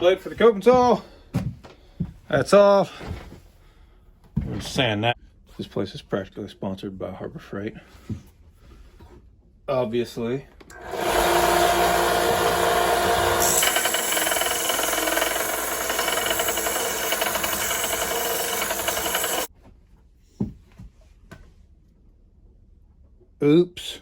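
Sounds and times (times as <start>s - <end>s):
electric power tool working wood: 10.7s - 19.5s.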